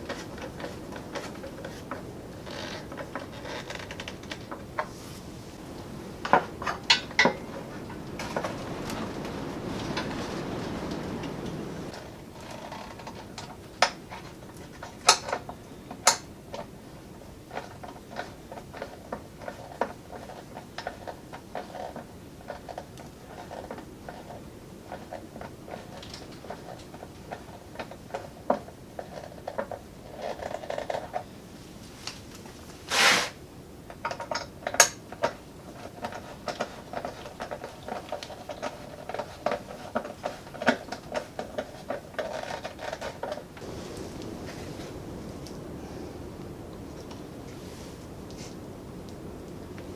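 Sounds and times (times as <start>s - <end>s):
brief rasp: 32.9s - 33.4s.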